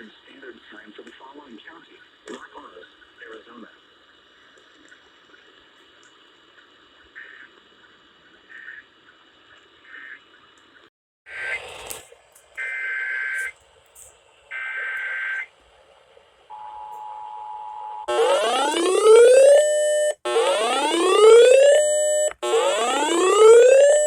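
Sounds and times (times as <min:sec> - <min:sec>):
static hiss: 0:00.0 - 0:16.5
faint beeps: 0:16.5 - 0:18.2
steady attention tone: 0:16.5 - 0:24.0.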